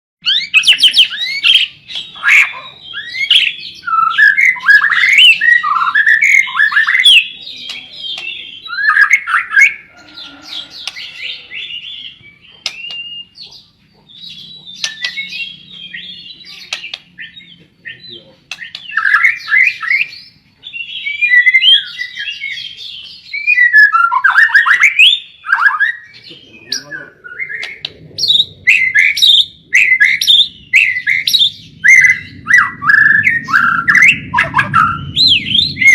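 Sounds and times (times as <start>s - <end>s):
songbird singing: 0.2s - 35.9s.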